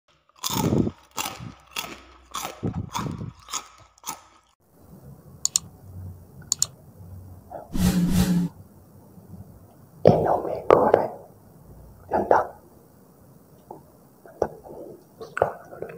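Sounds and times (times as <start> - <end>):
crunching crisp food: 0.1 - 4.6
faint clicks: 6.4 - 6.7.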